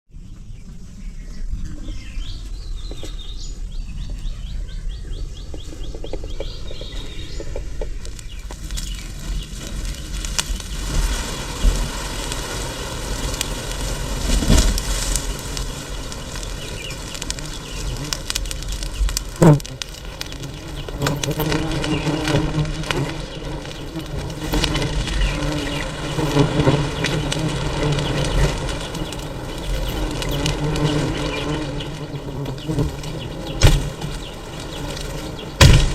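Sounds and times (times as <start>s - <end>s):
bees buzzing: 5.9s - 35.9s
knocks and rustles: 13.2s - 31.7s, 32.3s - 35.9s.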